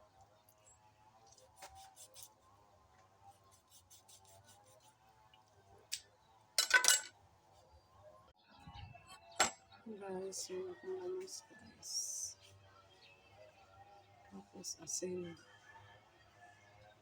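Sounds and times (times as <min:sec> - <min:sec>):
faint background music: 0:00.0 - 0:17.0
kitchen items clinking: 0:06.6 - 0:07.1
loud clatter of clinks: 0:06.6 - 0:07.1.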